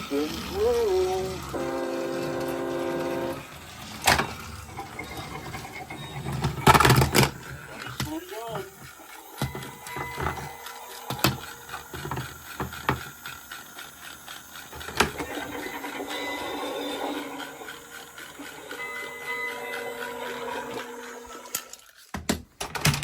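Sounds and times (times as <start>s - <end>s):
toy train rattling whirr: 0.0s - 23.0s.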